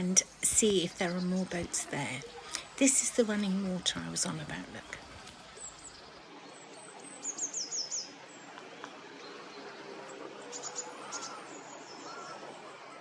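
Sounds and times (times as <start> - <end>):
water running: 0.0 - 6.2.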